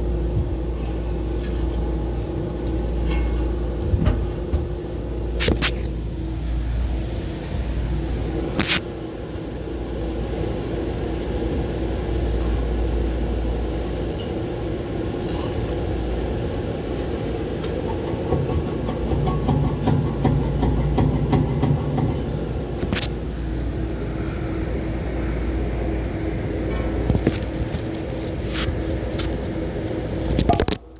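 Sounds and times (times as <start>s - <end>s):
fan motors droning: 0.0s - 30.9s
rattling fan bearings: 9.2s - 30.9s.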